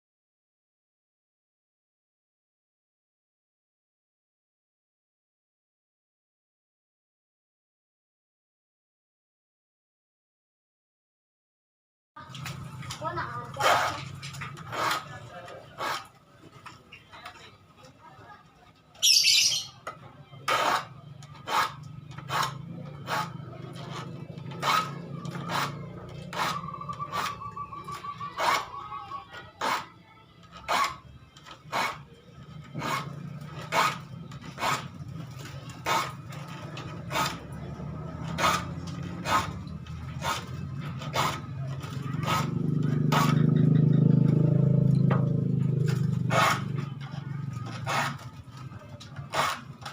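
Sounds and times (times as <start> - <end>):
file rasping on saw teeth: 13.5 - 16.2, 20.5 - 28.9, 29.6 - 43.5, 46.0 - 46.9, 47.6 - 48.4, 49.2 - 49.9
bird chirp: 19.0 - 19.8, 26.4 - 29.3.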